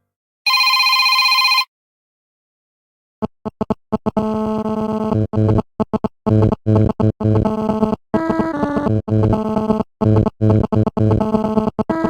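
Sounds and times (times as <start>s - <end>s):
electronic ringtone blips: 0.5s - 1.7s.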